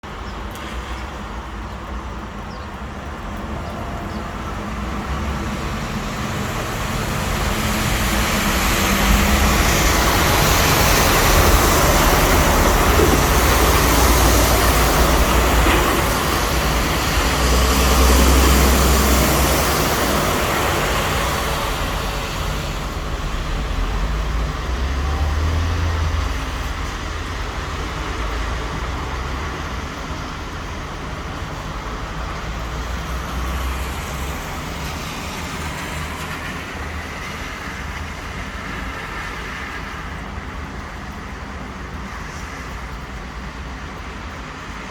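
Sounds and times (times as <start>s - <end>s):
low engine rumble: 0.0s - 34.8s
tyres hissing on wet road: 0.1s - 44.9s.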